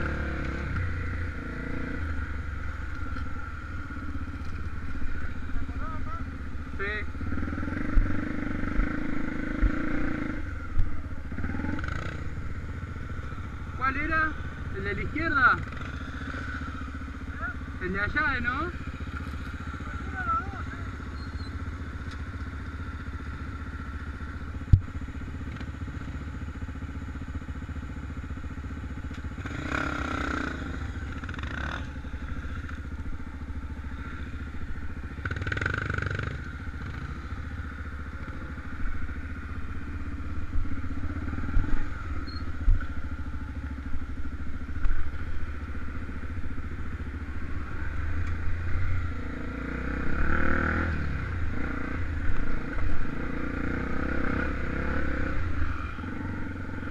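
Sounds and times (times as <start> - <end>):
motorcycle engine running: 0.0 - 56.9.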